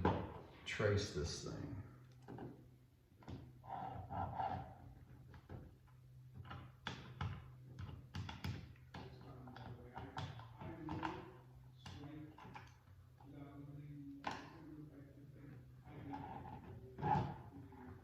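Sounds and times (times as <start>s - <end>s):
pencil scratching on drywall: 3.6s - 4.8s.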